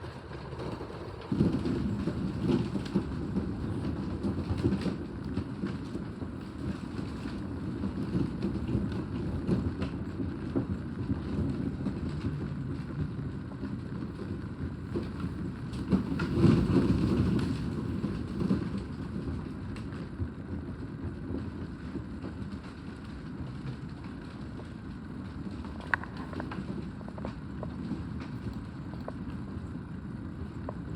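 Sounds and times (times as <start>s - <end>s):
rain: 0.0s - 30.9s
storm wind buffeting microphone: 0.0s - 30.9s.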